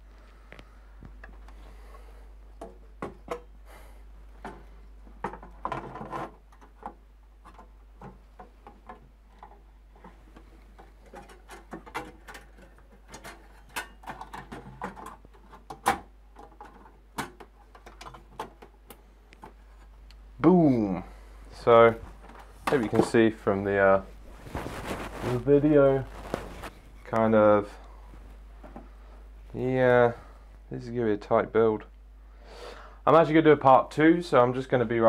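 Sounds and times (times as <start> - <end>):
parts rattling: 4.3 - 20.0
metal computer parts clicking: 10.8 - 19.0.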